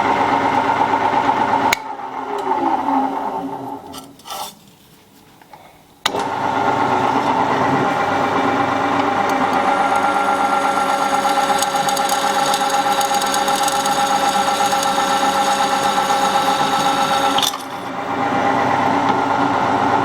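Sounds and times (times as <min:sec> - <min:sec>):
drill press motor humming: 0:06.1 - 0:19.3.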